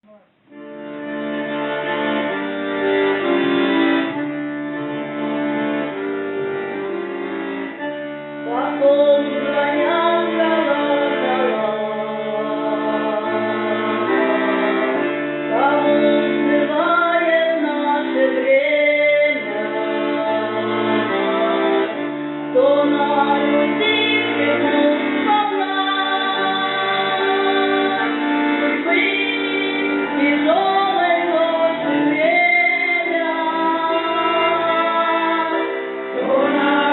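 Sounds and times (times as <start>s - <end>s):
sustained accompaniment chords: 0.0s - 36.9s
women's choir singing folk song: 22.6s - 36.9s.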